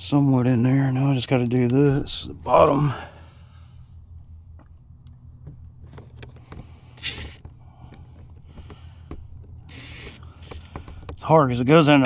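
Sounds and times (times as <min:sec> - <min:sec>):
low hum: 0:01.4 - 0:05.8.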